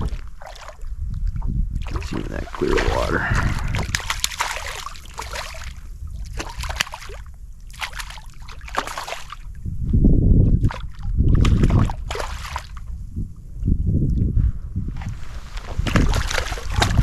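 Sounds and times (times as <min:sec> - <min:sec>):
fish splashing in water: 0:01.8 - 0:09.5, 0:10.7 - 0:12.8, 0:15.6 - 0:17.0
loud low rumbles: 0:02.0 - 0:04.1.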